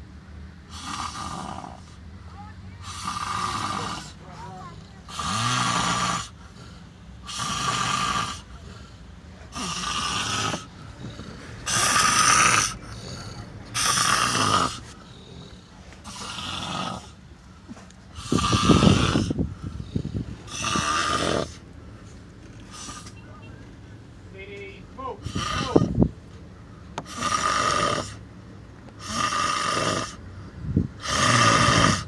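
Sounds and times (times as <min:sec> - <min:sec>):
man snoring loudly: 0:00.7 - 0:02.0, 0:02.8 - 0:08.8, 0:09.5 - 0:17.2, 0:18.1 - 0:21.6, 0:22.7 - 0:23.1, 0:25.2 - 0:26.0, 0:27.0 - 0:28.2, 0:29.0 - 0:30.2, 0:31.0 - 0:32.0.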